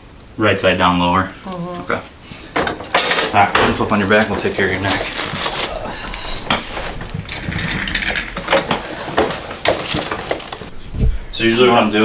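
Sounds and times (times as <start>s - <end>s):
rustle of movement: 1.5s - 11.3s
table creaking and clicking: 4.8s - 10.7s.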